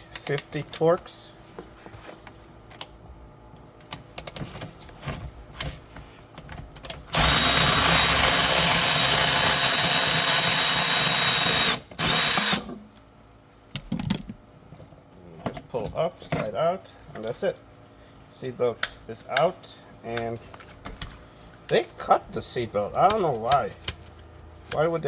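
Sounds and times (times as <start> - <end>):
power tool running: 7.0 - 12.8.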